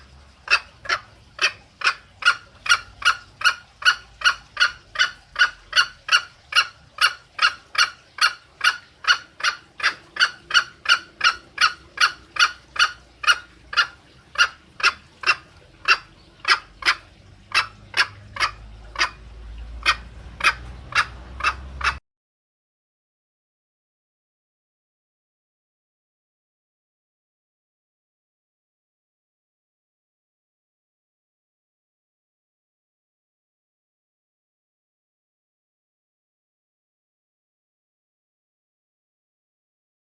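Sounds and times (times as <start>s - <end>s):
junglefowl clucking call: 0.4s - 22.0s.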